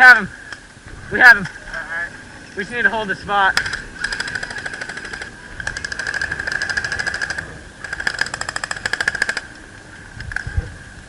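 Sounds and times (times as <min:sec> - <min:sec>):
toy guns firing full auto: 0:03.6 - 0:09.6.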